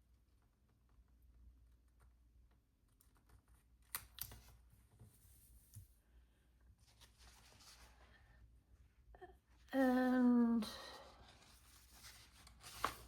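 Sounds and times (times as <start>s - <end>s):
light paper rustle: 6.8s - 8.4s, 10.9s - 13.0s.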